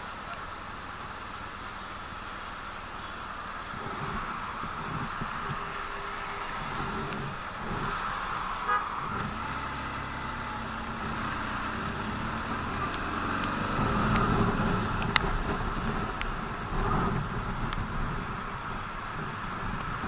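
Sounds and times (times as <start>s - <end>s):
motorcycle engine running: 0.0s - 20.0s
horn beep: 8.6s - 15.8s.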